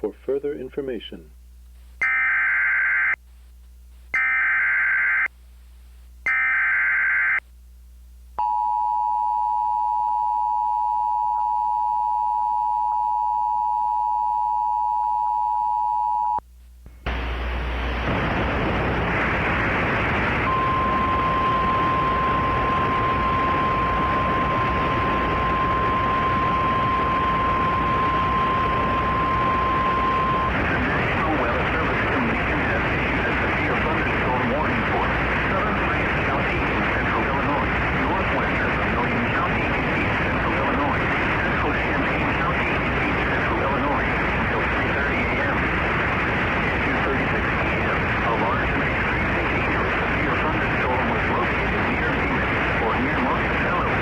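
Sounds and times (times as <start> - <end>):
radio static hiss: 0.0 - 8.4, 16.4 - 54.0
steady warning alarm tone: 2.0 - 3.2, 6.3 - 7.4, 20.5 - 31.6.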